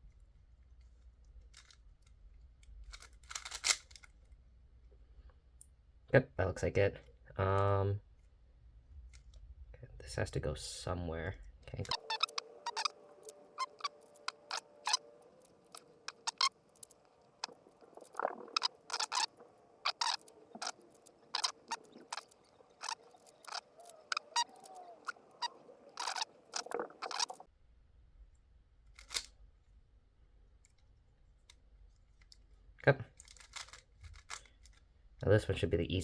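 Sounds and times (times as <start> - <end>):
puzzle cube clicking: 2.6 - 4.2, 11.8 - 27.4, 29.0 - 29.3, 33.2 - 34.8.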